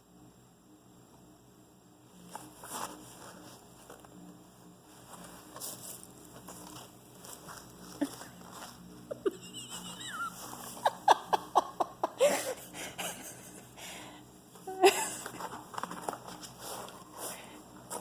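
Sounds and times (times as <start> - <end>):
person laughing: 9.0 - 13.8, 14.7 - 15.5.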